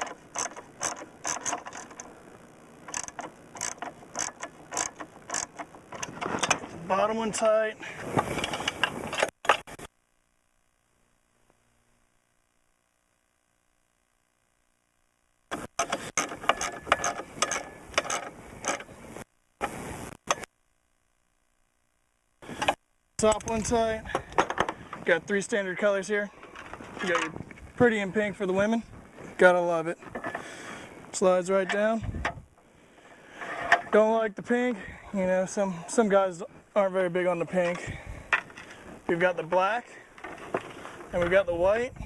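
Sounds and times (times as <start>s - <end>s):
ratchet wrench clicking: 0.0s - 2.1s, 2.9s - 6.6s, 15.6s - 18.9s.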